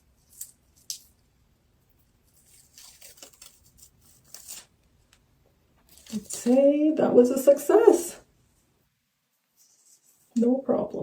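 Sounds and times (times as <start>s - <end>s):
faint tearing and crinkling: 2.0s - 5.2s, 5.8s - 6.6s.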